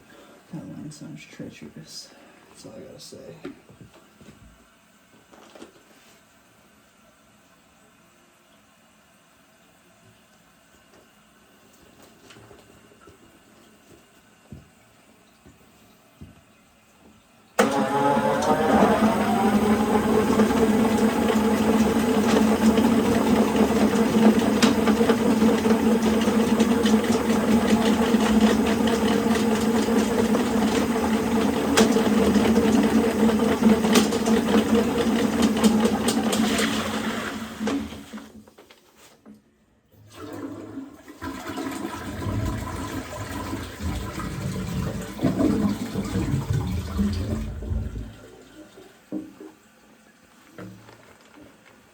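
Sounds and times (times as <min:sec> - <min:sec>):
drain-cleaning machine motor hum: 0:17.6 - 0:38.2, 0:42.1 - 0:48.4.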